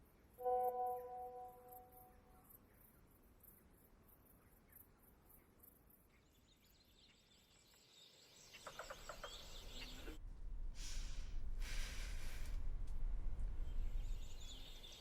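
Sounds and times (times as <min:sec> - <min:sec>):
bird chirps: 0:06.1 - 0:10.2, 0:13.6 - 0:15.0
low rumble: 0:10.2 - 0:15.0.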